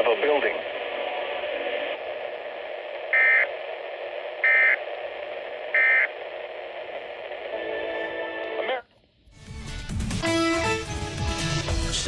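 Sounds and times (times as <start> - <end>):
steady radio hiss: 0.0 - 9.0.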